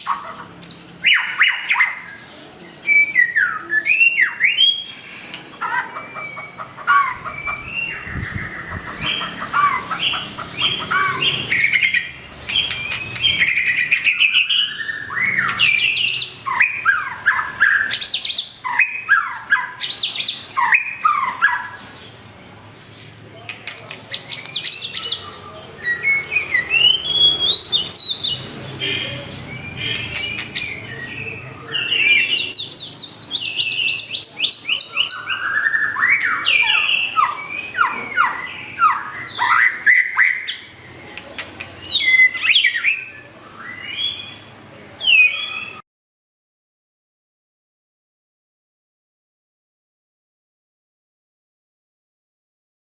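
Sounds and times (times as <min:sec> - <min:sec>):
bird singing whistles and trills: 0:02.8 - 0:04.9, 0:06.0 - 0:21.8, 0:25.8 - 0:28.4, 0:41.7 - 0:45.8.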